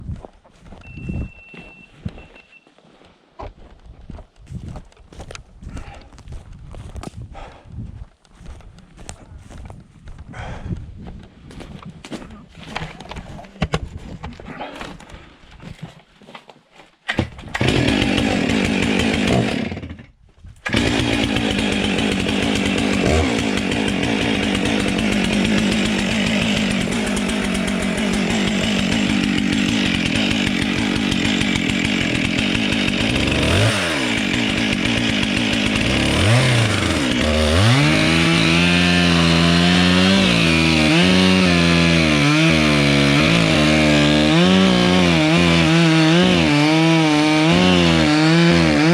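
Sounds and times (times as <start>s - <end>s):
chainsaw sawing into wood: 17.1s - 48.9s.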